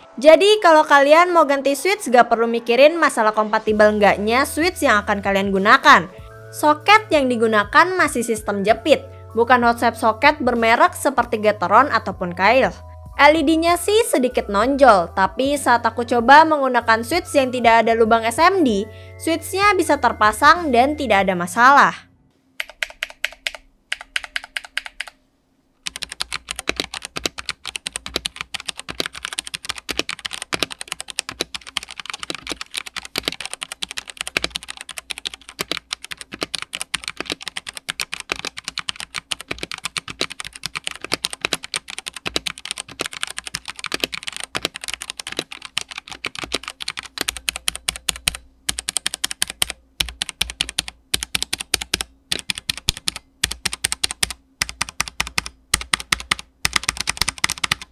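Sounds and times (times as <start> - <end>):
mechanical keyboard typing: 22.6 - 25.2, 25.8 - 57.9.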